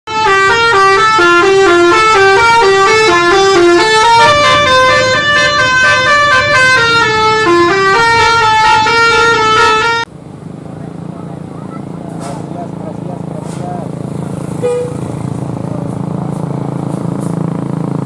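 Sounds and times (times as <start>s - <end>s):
bus musical horn melody: 0.1s - 10.1s, 14.5s - 15.5s.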